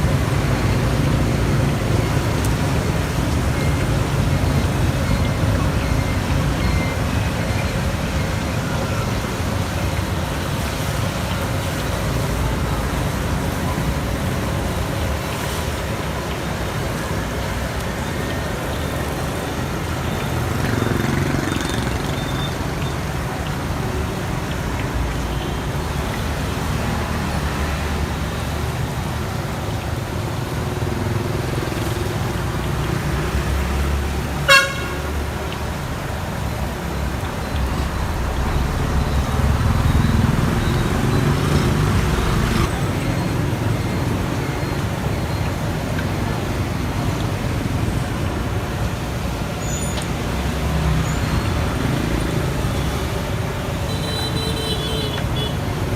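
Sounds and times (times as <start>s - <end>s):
street traffic noise: 0.0s - 55.9s
car horn toot: 34.4s - 35.1s.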